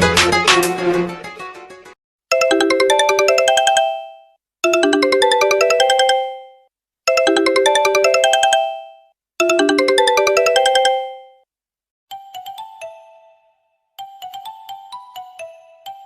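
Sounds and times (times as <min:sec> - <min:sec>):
higher thinner ringtone: 0:02.3 - 0:11.4
smartphone ringtone: 0:02.3 - 0:11.5, 0:12.1 - 0:16.0.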